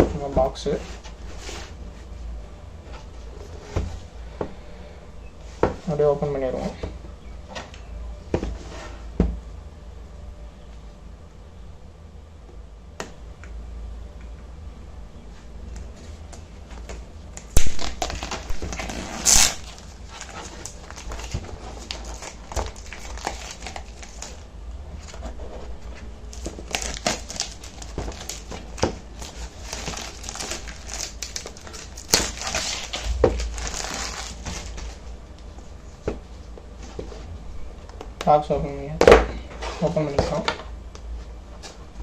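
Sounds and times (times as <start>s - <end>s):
packaging rustling and crinkling: 16.1s - 35.2s.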